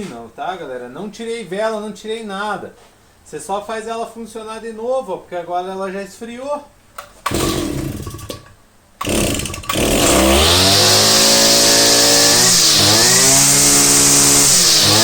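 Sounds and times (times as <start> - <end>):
brushcutter engine starting and running: 7.0 - 15.0.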